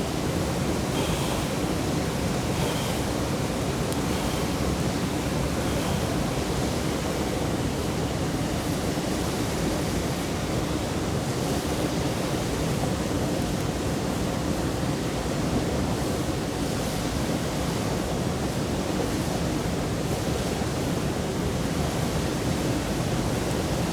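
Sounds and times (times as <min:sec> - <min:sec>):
mountain stream flowing: 0:00.0 - 0:08.0.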